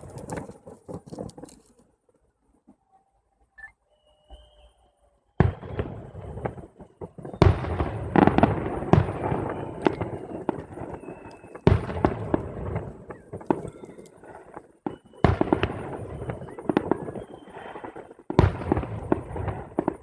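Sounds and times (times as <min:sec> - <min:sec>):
firework crackling: 0:00.0 - 0:01.8, 0:05.4 - 0:20.0
firework bangs: 0:05.4 - 0:20.0.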